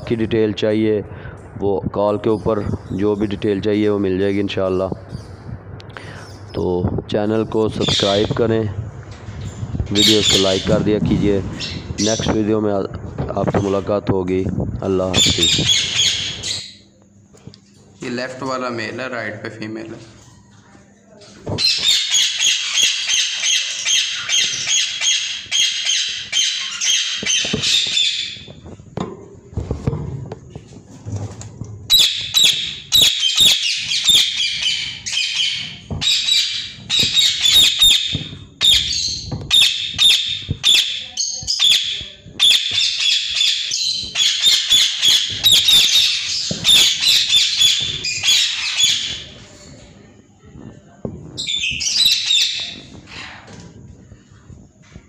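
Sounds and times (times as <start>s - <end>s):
parakeets squawking: 7.6s - 8.4s, 9.8s - 12.5s, 15.0s - 16.8s, 21.6s - 28.6s, 31.9s - 49.4s, 51.4s - 53.4s.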